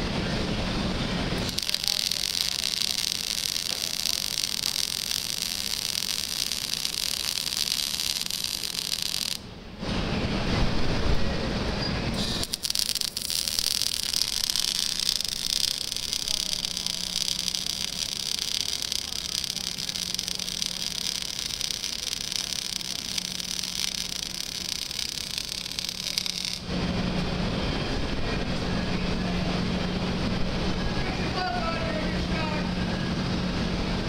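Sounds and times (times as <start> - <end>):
welding arc sizzling: 1.3 - 9.5, 12.1 - 27.0
arc crackles: 1.4 - 9.5, 12.2 - 26.8.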